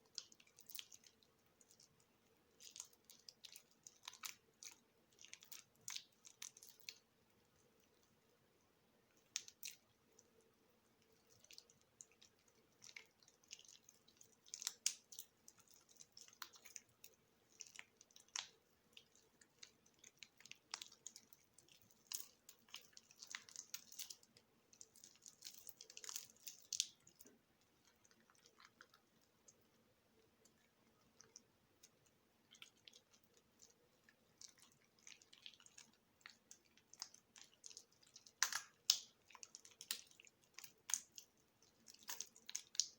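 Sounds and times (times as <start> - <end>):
wet soap crackling and squishing: 0.0 - 42.9.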